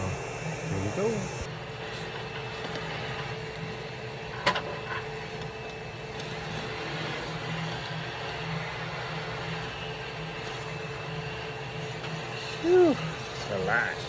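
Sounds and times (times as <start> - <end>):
machine hum with held tone: 0.0 - 14.0.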